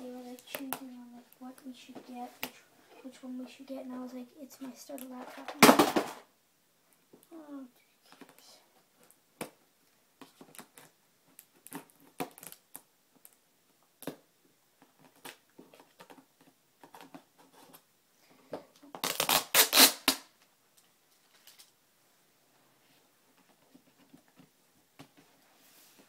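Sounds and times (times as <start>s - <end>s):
plastic wrapping tearing: 18.9s - 20.3s.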